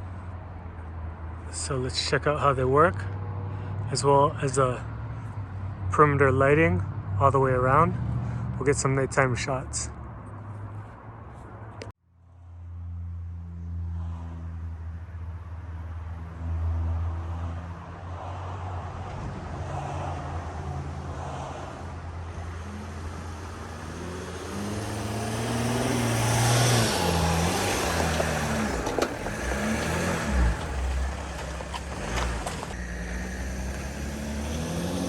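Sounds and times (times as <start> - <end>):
van engine running: 22.4 - 35.0.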